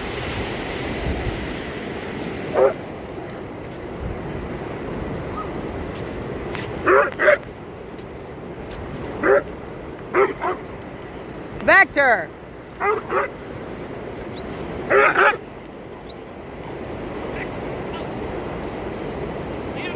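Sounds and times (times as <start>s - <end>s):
surf: 0.0s - 19.9s
wind: 0.0s - 19.9s
dog barking: 2.5s - 2.8s, 6.8s - 7.5s, 9.2s - 9.5s, 10.1s - 10.6s, 12.8s - 13.3s, 14.9s - 15.4s.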